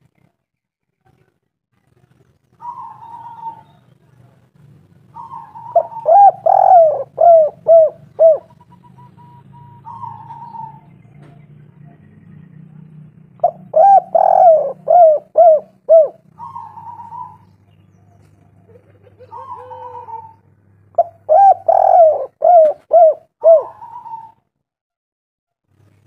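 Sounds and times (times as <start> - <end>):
dove cooing: 2.6 - 3.8, 5.1 - 11.0, 13.3 - 24.4.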